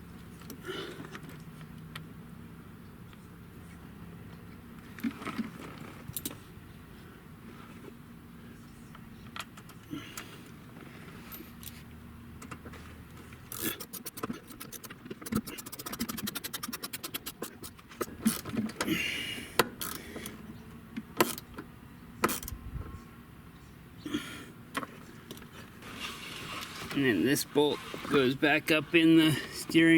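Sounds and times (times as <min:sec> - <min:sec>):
ratchet wrench clicking: 0:13.5 - 0:18.4, 0:19.8 - 0:20.0, 0:22.2 - 0:22.6.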